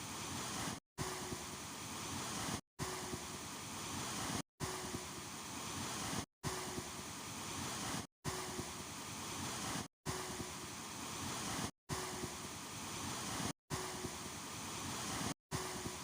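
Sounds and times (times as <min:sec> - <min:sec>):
sea waves: 0:03.4 - 0:08.1, 0:08.8 - 0:15.9.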